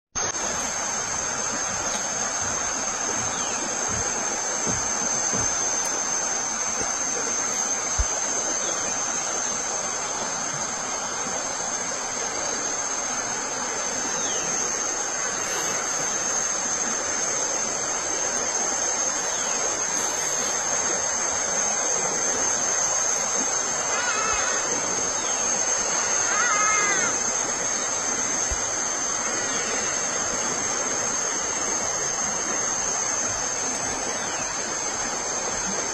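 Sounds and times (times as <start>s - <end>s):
stream rushing: 0.2s - 35.9s
thin high whine: 0.2s - 35.9s.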